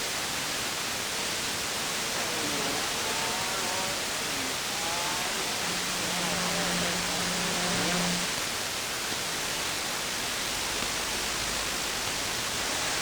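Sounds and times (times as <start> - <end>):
radio static hiss: 0.3 - 13.0
low carrier hum: 1.6 - 8.5
faint warbling radio signals: 1.9 - 8.4.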